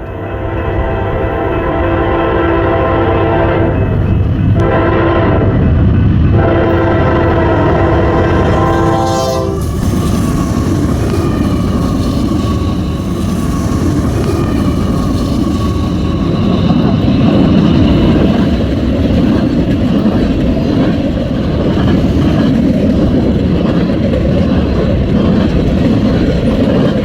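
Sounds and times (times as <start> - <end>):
train rumbling past: 0.0 - 27.0
locomotive air horn blasts: 0.1 - 3.9, 4.6 - 5.6, 6.4 - 9.7.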